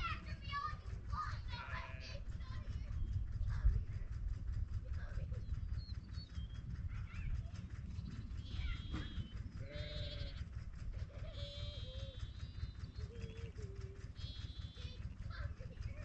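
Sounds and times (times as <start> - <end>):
steady low rumble: 0.0 - 16.0
sheep bleating: 1.5 - 2.2, 9.6 - 10.4.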